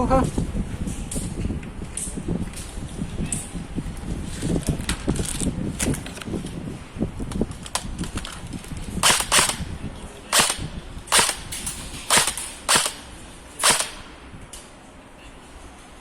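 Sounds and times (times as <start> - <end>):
airsoft gun firing: 9.0 - 9.7, 10.3 - 14.3.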